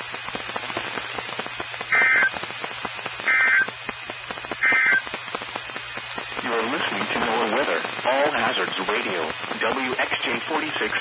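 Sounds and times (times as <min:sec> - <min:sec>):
radio static: 0:00.0 - 0:11.0
digital data tone bursts: 0:01.9 - 0:02.4, 0:03.2 - 0:03.8, 0:04.6 - 0:05.1.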